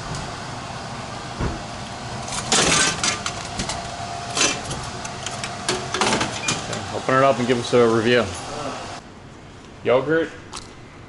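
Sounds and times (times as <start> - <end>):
machine hum: 0.0 - 9.3
bottle clattering in machine: 2.3 - 6.7.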